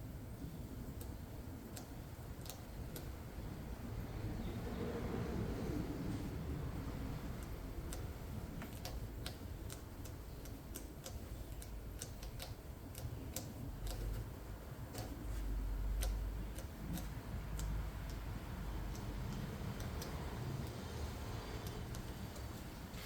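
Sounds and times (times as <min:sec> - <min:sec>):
light sharp clicks: 0:07.4 - 0:14.3, 0:14.9 - 0:22.7.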